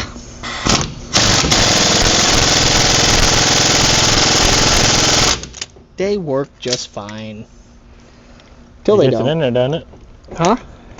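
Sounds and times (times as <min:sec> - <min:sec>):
impact wrench hammering: 0:01.2 - 0:05.6.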